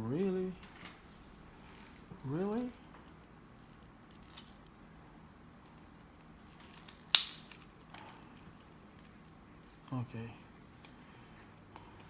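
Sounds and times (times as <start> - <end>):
plastic snapping: 6.7 - 8.1.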